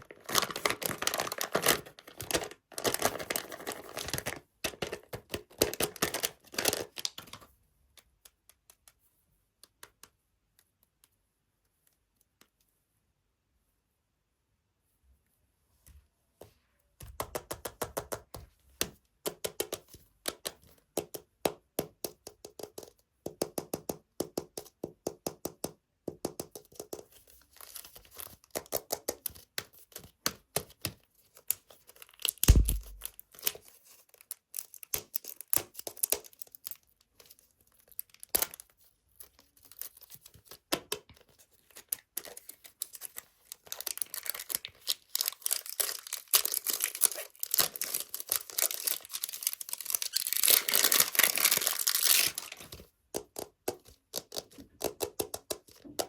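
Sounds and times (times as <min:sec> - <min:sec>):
packaging being torn and crinkled: 0:00.0 - 0:07.4, 0:41.7 - 0:52.8.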